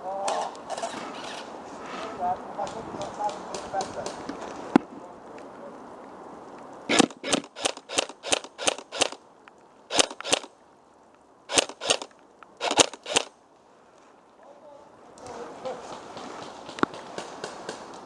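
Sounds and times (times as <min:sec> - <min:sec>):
airsoft gun shots: 0:06.9 - 0:09.2, 0:09.9 - 0:10.5, 0:11.5 - 0:13.3
sharp click: 0:09.9 - 0:10.5.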